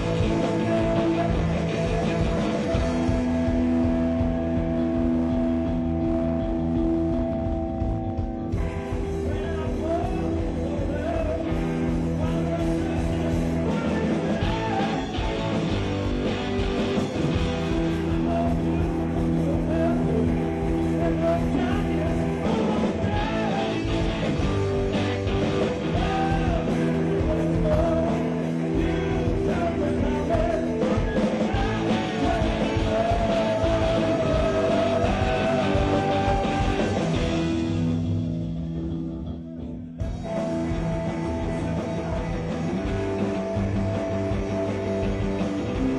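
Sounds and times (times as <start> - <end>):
rock music with guitar: 0.0 - 45.9.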